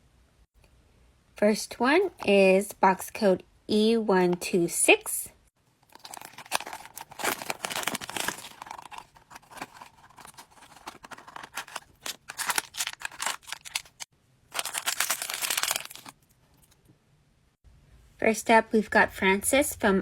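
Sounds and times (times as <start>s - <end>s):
packaging torn and crinkled: 5.9s - 16.2s.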